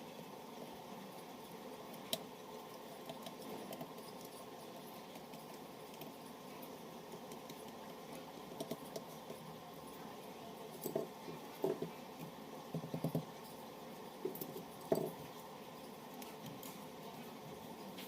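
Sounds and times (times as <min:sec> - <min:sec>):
small clicks and taps: 0:07.1 - 0:09.4, 0:10.8 - 0:13.3.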